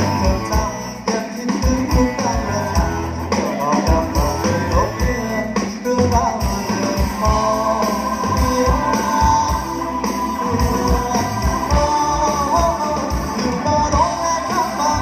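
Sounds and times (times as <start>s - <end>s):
bass guitar: 0.0s - 15.0s
steady drum beat: 0.0s - 15.0s
lead guitar melody: 1.9s - 15.0s.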